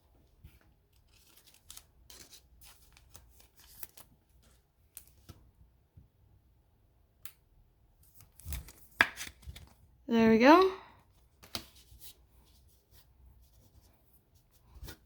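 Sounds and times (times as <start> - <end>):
trading cards sliding and rustling: 1.0 - 5.4.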